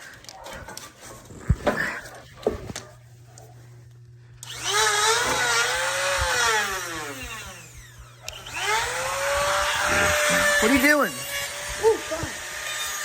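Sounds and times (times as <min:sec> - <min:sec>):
angle grinder whining: 0:04.4 - 0:13.0.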